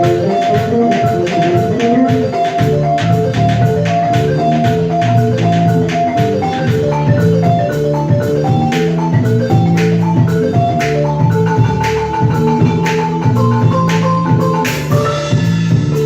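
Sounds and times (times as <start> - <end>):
balafon melody: 0.0 - 16.0
percussion hits: 0.0 - 16.0
steady low notes: 0.0 - 16.0.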